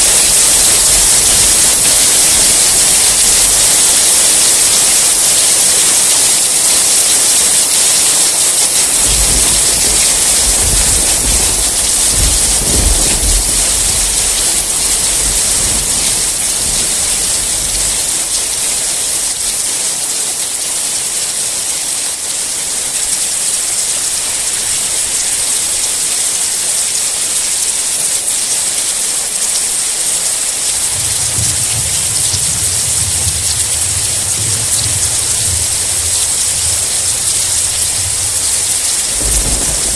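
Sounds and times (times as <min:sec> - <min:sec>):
thunder rumbling: 0:00.0 - 0:07.1, 0:08.6 - 0:19.6, 0:30.2 - 0:39.9
heavy rain hissing: 0:00.0 - 0:39.9.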